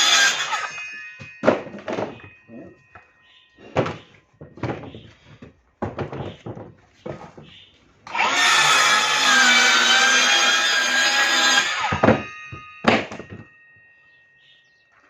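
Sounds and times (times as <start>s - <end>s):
circular saw cutting: 0.0s - 0.8s, 8.1s - 12.1s.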